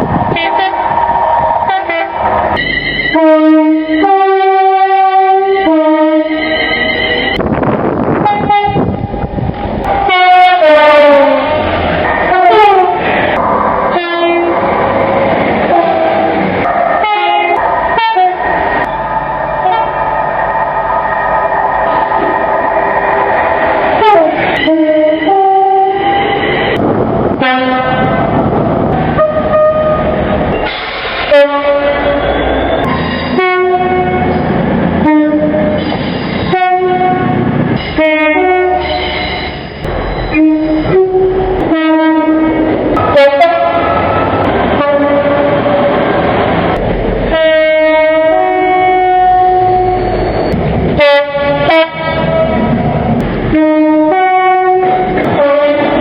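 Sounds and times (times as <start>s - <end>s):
train engine and rail noise: 0.0s - 56.0s
two-tone train air horns: 0.3s - 1.0s, 1.6s - 7.4s, 8.2s - 9.1s, 10.0s - 13.1s, 13.9s - 14.6s, 15.6s - 19.0s, 19.6s - 20.1s, 24.0s - 26.8s, 27.4s - 28.2s, 29.2s - 34.4s, 35.0s - 39.6s, 40.2s - 46.0s, 47.3s - 52.8s, 53.5s - 56.0s.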